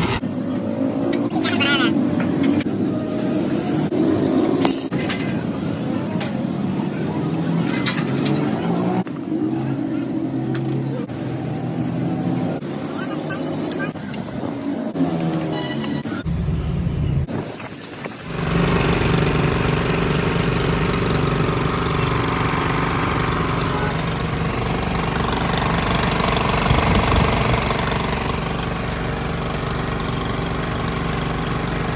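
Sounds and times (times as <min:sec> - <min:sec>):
engine running with pulsing beat: 0:18.2 - 0:31.9.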